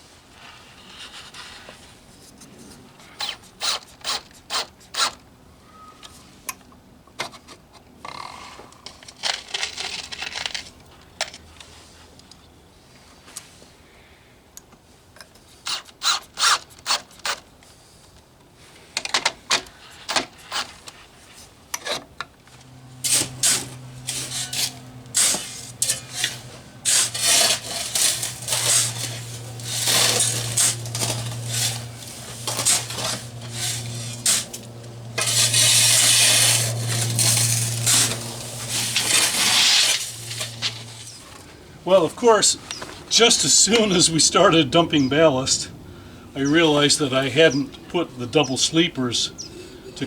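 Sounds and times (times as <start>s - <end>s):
gravel clattering and scraping: 18.7s - 43.1s
steady low hum: 22.4s - 43.2s.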